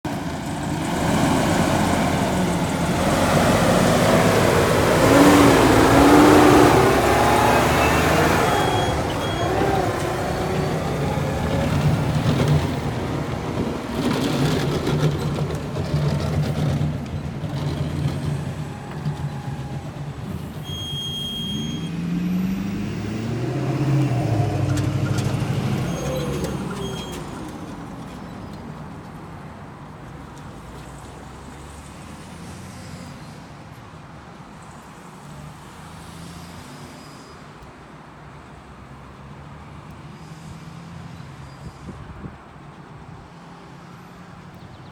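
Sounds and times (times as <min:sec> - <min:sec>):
truck diesel engine accelerating: 0:00.0 - 0:29.5.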